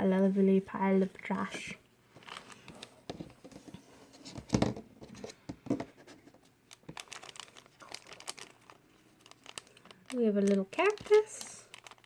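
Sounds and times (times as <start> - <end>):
plastic wrap and cardboard crinkling: 2.2 - 3.0, 6.1 - 12.0.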